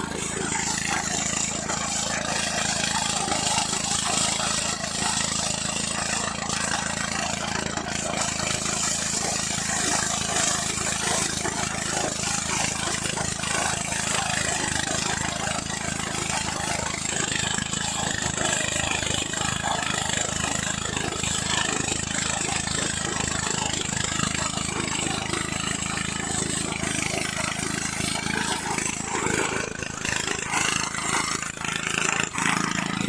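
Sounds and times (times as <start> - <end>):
low engine hum: 0.0 - 5.1, 23.5 - 33.0.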